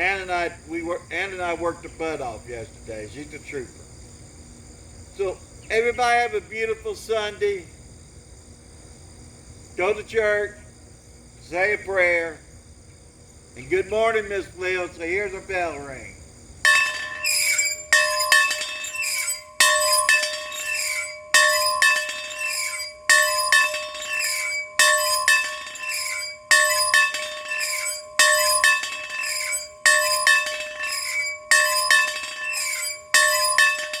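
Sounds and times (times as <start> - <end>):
bell ringing: 16.7 - 34.0.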